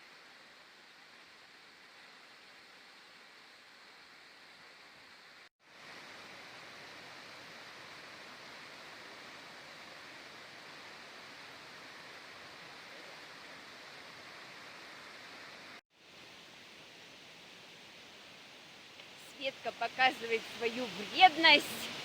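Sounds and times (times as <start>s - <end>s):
waterfall roar: 19.3s - 22.0s.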